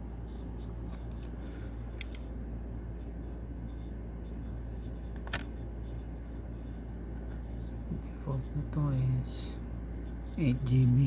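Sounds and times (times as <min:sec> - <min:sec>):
steady low hum: 0:00.0 - 0:11.0
clicks of laptop parts: 0:01.9 - 0:02.3.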